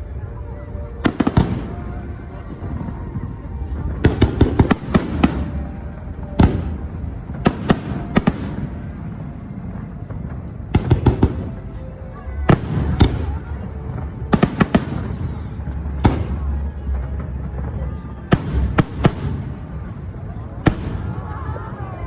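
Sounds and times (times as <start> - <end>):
fireworks bursting with sharp bangs: 0.0 - 22.0.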